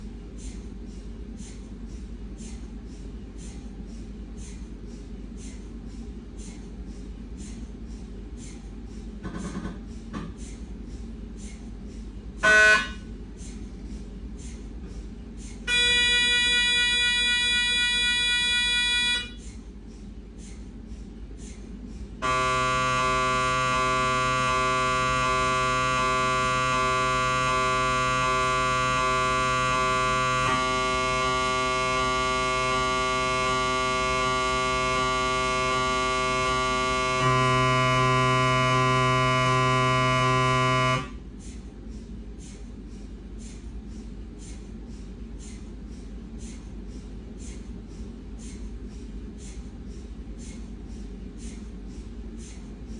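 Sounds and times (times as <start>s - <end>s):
low hum with soft ticks: 0.0s - 15.7s, 19.2s - 22.2s, 41.0s - 52.9s
tonal buzz: 15.7s - 19.4s, 22.2s - 41.2s
loud many-toned gradient buzz: 22.2s - 41.2s.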